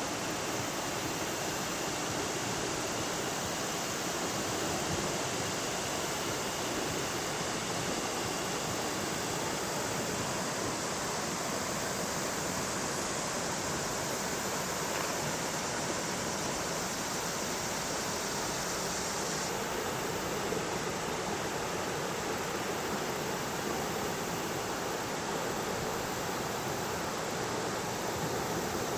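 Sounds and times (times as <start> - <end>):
river water rushing: 0.0 - 28.9.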